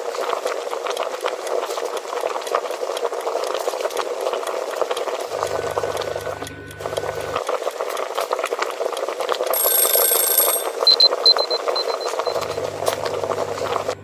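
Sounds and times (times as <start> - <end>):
steady crackling noise: 0.0 - 14.0
high-pitched beeps: 9.6 - 12.7
buzzy alarm tone: 9.6 - 14.0.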